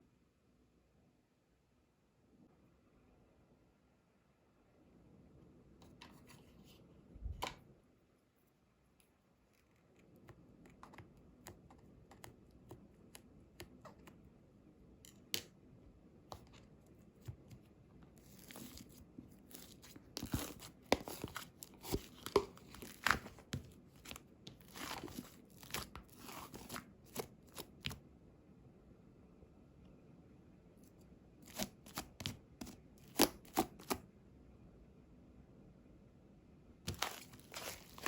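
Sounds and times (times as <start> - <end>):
crinkling and tearing of packaging: 18.3 - 27.9, 36.9 - 38.0.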